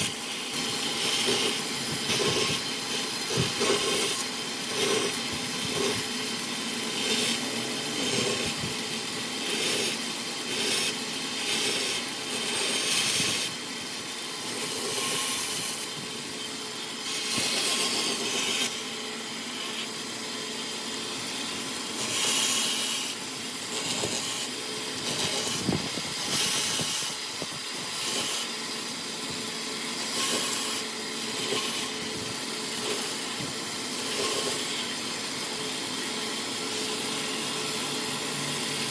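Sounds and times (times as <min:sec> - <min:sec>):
tool rasping wood: 0:00.0 - 0:13.6, 0:14.4 - 0:15.9, 0:17.1 - 0:18.8, 0:22.0 - 0:27.3
faint machine hum: 0:00.0 - 0:38.9.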